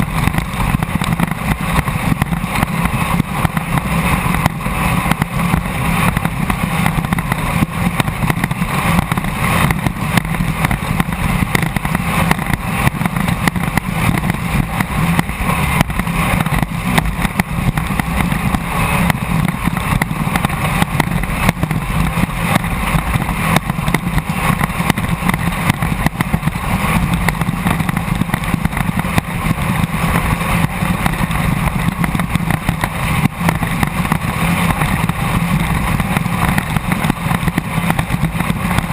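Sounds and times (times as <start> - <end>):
rough-ground noise: 0.0 - 38.9
wind rush: 0.0 - 38.9.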